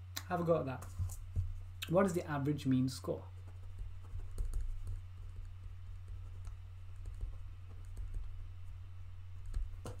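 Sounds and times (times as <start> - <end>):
steady low hum: 0.0 - 10.0
typing on computer keyboard: 4.0 - 5.0.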